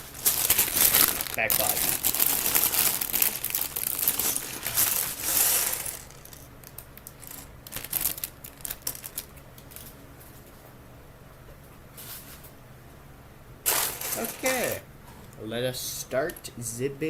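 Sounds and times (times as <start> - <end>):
plastic pieces rustling and clattering: 0.0 - 10.0, 13.7 - 14.8.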